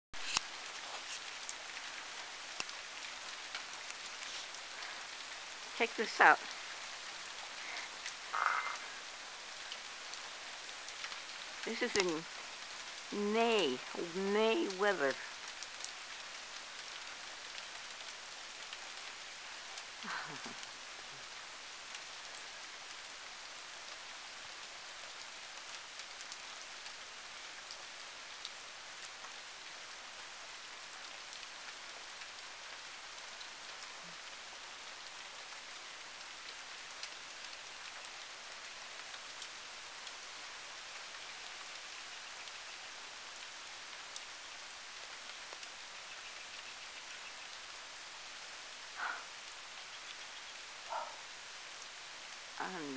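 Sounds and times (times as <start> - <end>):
wet snow pattering: 0.2 - 21.3.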